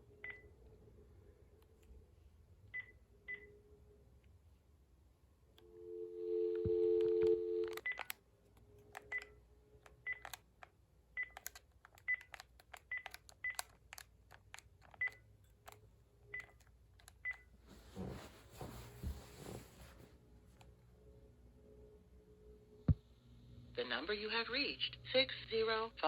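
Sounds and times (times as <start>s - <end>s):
two-tone dial tone: 5.7s - 8.0s
keypad clicks with beeps: 6.5s - 8.2s, 9.0s - 10.5s, 11.2s - 15.3s, 16.3s - 17.5s.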